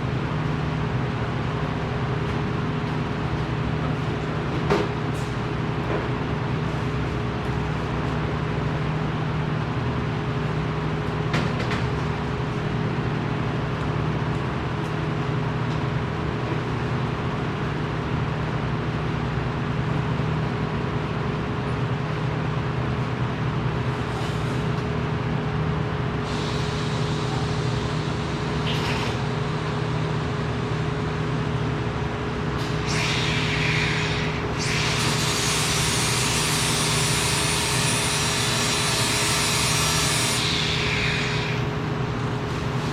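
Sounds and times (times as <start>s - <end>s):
low machine hum: 0.0s - 42.9s
hiss bursts: 26.3s - 30.2s, 32.8s - 41.5s.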